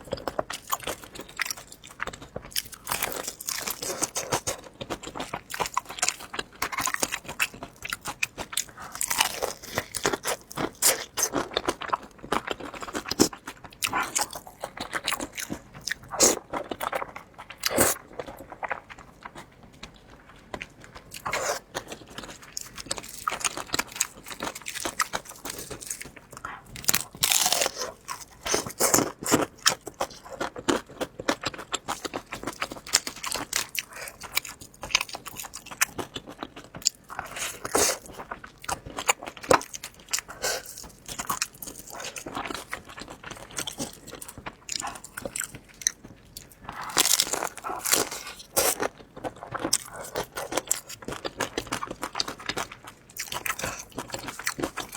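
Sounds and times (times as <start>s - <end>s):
person crunching and chewing: 0.0s - 54.9s.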